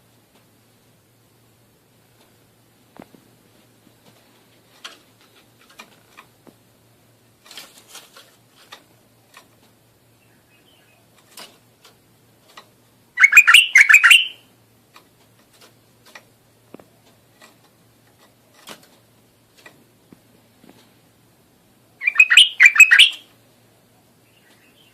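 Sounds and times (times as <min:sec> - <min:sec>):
bird song notes: 0:10.1 - 0:11.1, 0:13.2 - 0:14.5, 0:22.0 - 0:23.3, 0:24.2 - 0:24.9
bird chirping: 0:10.1 - 0:11.2, 0:13.2 - 0:14.5, 0:22.0 - 0:23.3, 0:24.2 - 0:24.9.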